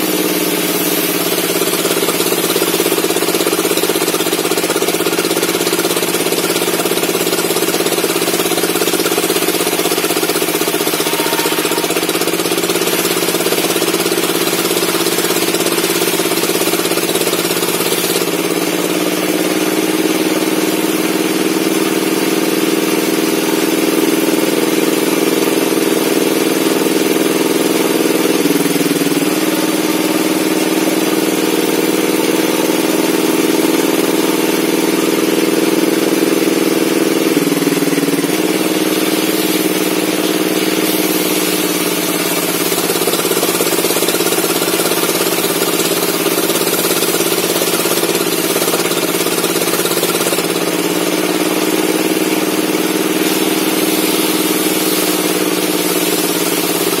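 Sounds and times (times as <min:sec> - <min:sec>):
high hiss of saw cut: 0:00.0 - 0:19.0, 0:26.6 - 0:33.4, 0:37.4 - 0:57.0
circular saw cutting logs: 0:00.0 - 0:57.0.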